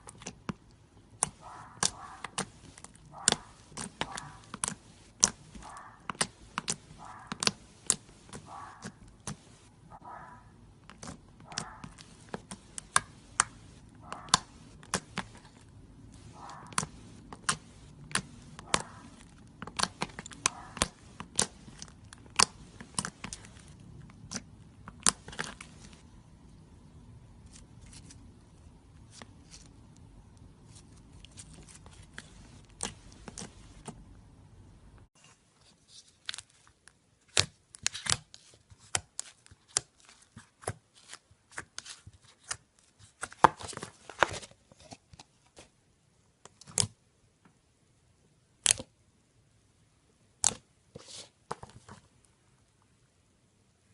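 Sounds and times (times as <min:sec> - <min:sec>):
slime popping and crackling: 0:00.0 - 0:09.5, 0:10.9 - 0:26.0.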